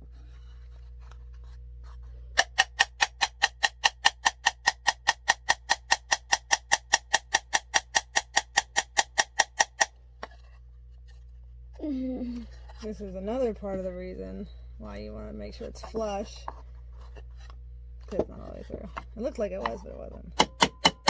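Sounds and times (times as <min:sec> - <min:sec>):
hammer tapping a nail: 0:02.4 - 0:09.9, 0:20.3 - 0:21.0.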